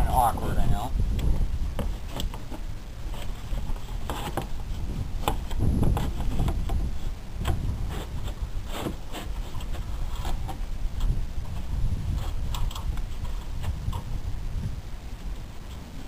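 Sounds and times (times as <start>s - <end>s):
plywood panel knocks and scrapes: 5.2s - 14.1s.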